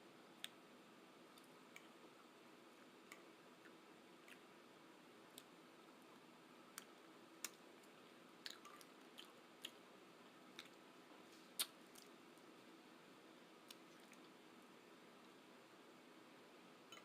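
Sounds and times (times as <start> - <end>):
low steady hiss: 0.0 - 17.0
person chewing with mouth clicks: 6.8 - 9.8, 10.5 - 10.8, 11.6 - 12.1.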